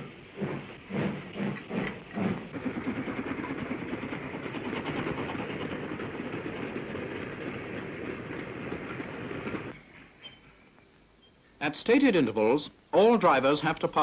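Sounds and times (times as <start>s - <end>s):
steam train rattling rumble: 0.0s - 9.8s.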